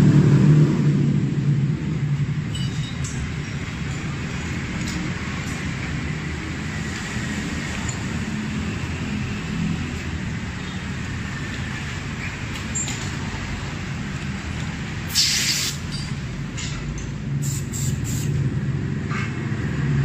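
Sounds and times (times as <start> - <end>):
compressed air hissing from nozzle: 15.1 - 15.9, 17.4 - 18.4.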